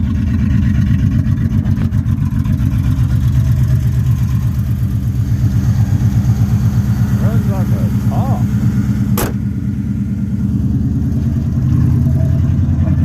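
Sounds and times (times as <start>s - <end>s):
truck engine idling: 0.0s - 13.0s.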